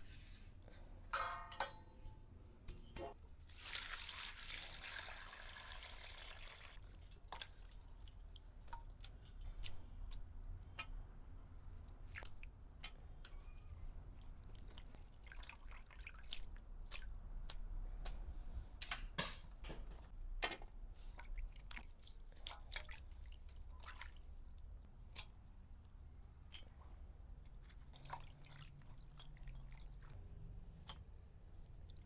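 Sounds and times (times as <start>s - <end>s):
water splashing in a bowl: 3.4s - 8.8s, 14.2s - 17.1s, 21.2s - 24.6s, 27.5s - 30.2s.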